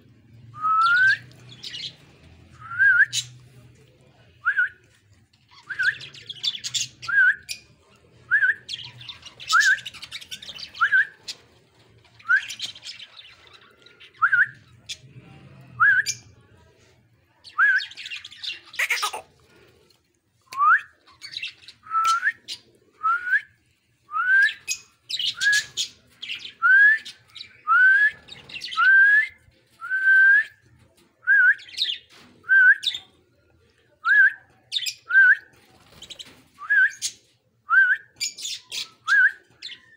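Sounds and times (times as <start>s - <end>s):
scratchy warbling chatter: 18.1s - 19.8s.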